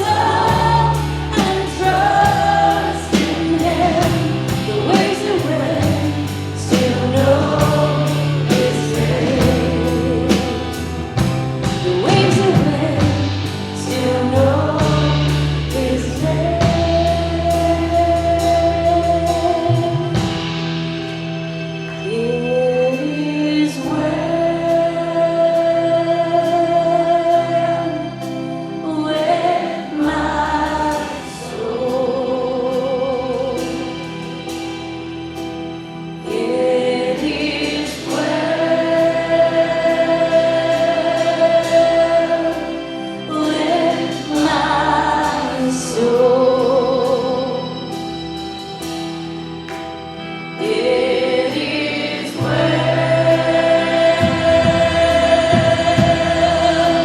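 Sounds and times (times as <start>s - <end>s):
people singing: 0.0s - 20.4s, 22.0s - 34.2s, 36.2s - 48.0s, 50.2s - 57.0s
drums beating: 0.0s - 21.1s, 52.4s - 57.0s
worship band playing: 0.0s - 57.0s.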